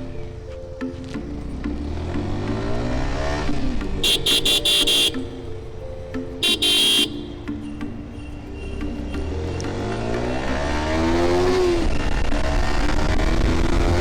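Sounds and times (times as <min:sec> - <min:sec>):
traffic engines running: 0:00.0 - 0:14.0
vehicle horn honking: 0:04.0 - 0:05.5, 0:06.4 - 0:07.5.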